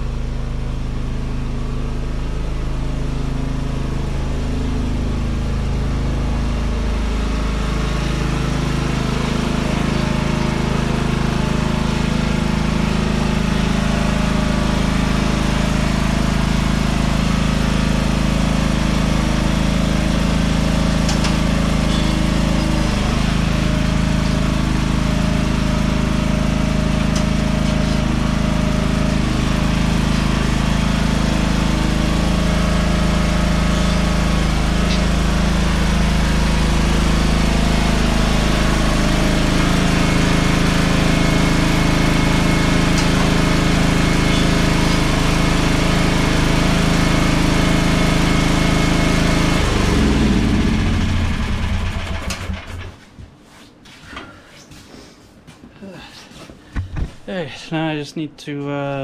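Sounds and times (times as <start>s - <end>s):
lawn tractor engine running: 0.0s - 53.0s.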